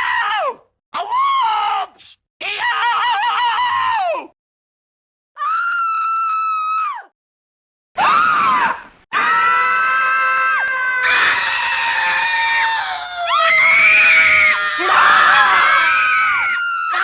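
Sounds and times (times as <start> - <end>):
high-pitched human screams: 5.4 - 7.1, 8.0 - 17.0.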